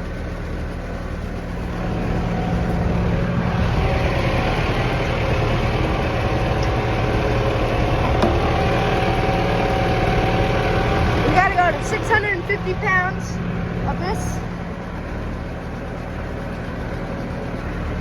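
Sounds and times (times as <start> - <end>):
feed mixer mixing hay: 0.0 - 18.0
tractor engine running: 0.0 - 18.0.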